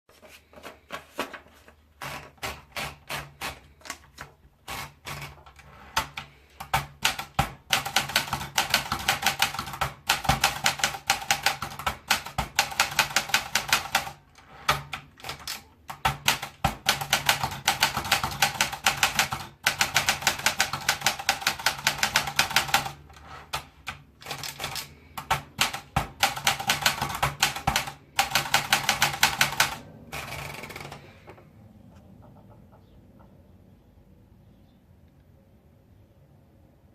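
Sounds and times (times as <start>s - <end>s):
typewriter keystrokes: 2.0s - 31.2s.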